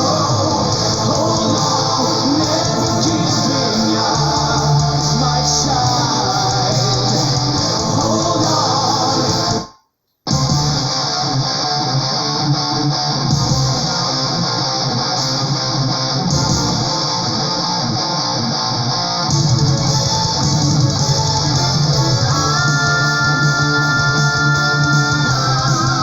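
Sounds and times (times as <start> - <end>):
bass guitar: 0.0 - 9.7, 10.3 - 26.0
electric guitars: 0.0 - 9.7, 10.3 - 26.0.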